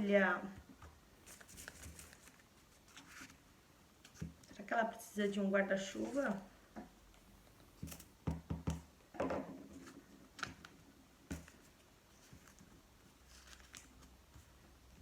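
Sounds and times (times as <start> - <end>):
paper rustling: 1.2 - 3.4, 11.3 - 14.6.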